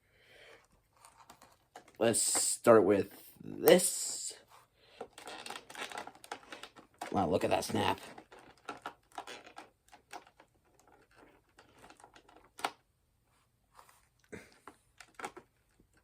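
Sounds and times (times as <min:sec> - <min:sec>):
plastic toy and packaging handled: 0:00.4 - 0:16.0.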